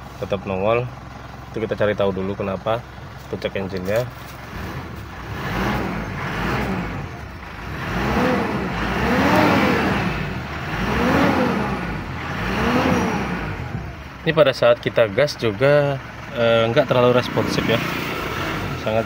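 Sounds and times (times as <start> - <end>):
car engine revving: 3.8 - 14.6, 15.5 - 19.0.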